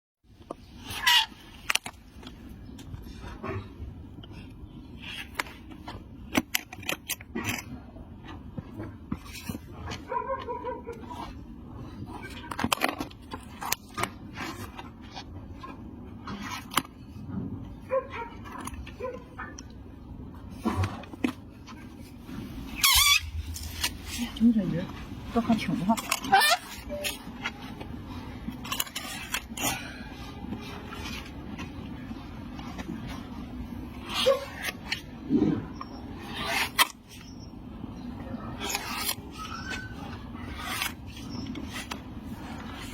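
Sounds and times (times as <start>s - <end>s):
rasp scraping a hoof: 26.0s - 37.5s, 38.4s - 42.9s.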